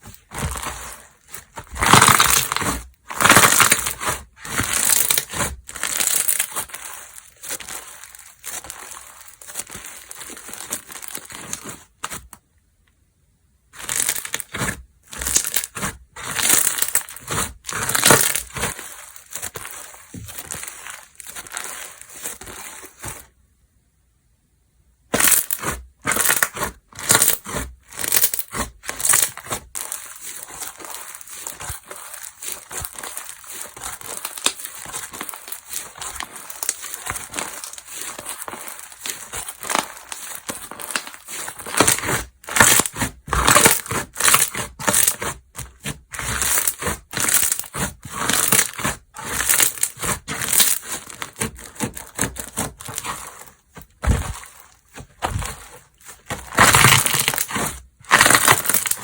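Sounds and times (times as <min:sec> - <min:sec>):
slime crackling and squishing: 0:00.0 - 0:12.4, 0:13.7 - 0:23.3, 0:25.1 - 0:59.0.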